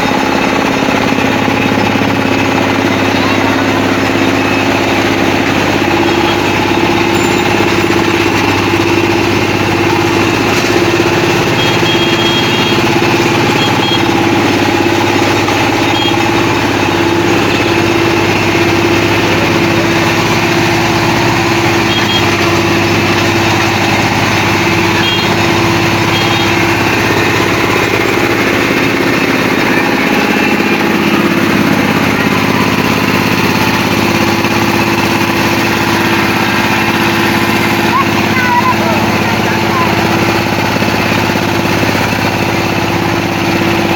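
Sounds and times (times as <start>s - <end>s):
combine harvester engine running: 0.0s - 43.9s.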